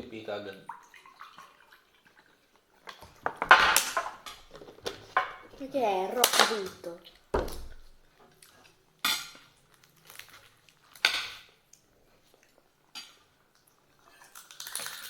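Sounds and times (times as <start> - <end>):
cutlery and dishes clinking: 9.0 - 9.5, 11.0 - 11.5.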